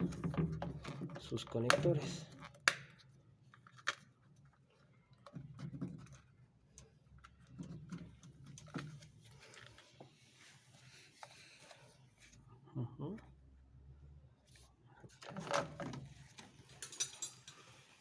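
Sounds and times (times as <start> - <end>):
plastic parts clicking and knocking: 0.0 - 4.1.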